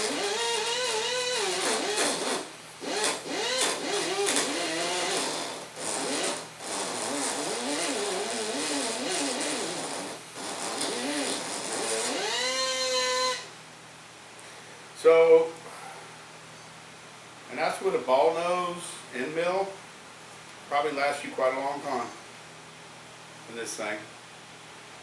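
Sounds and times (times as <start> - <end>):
die grinder whining: 0.0 - 13.5.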